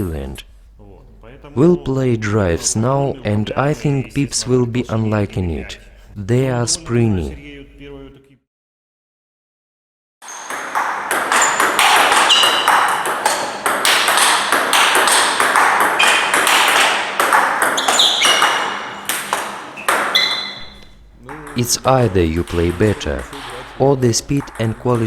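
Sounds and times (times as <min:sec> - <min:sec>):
ball bouncing on table: 0:10.3 - 0:25.0
table tennis ball hits: 0:10.3 - 0:25.0.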